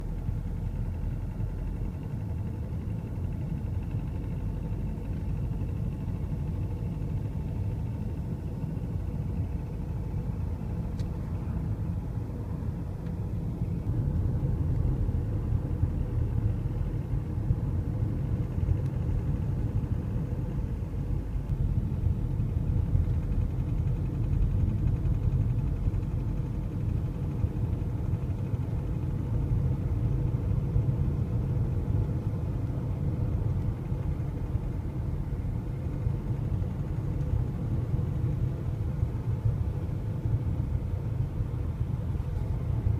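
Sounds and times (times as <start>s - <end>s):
diesel engine running: 0.0s - 42.9s
engine knocking: 15.9s - 39.5s.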